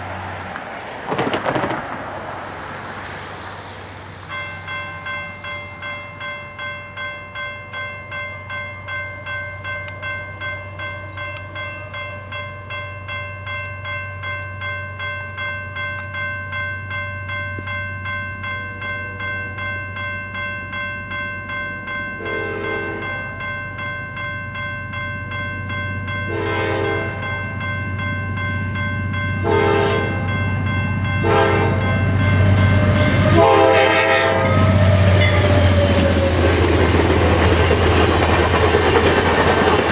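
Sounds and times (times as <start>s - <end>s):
train rumble: 0.0s - 39.9s
crossing bell ringing: 4.0s - 39.9s
train horn blasts: 22.2s - 23.2s, 26.3s - 27.2s, 29.4s - 30.3s, 31.2s - 35.6s.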